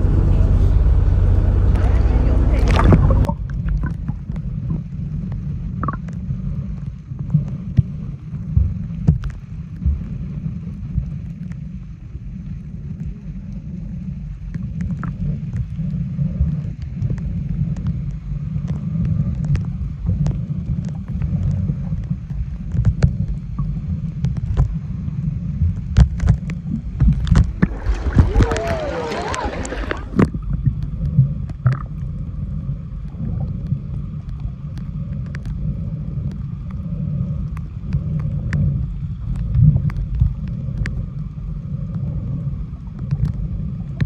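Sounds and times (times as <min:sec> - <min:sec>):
wind buffeting microphone: 0:00.0 - 0:04.9, 0:25.9 - 0:30.3.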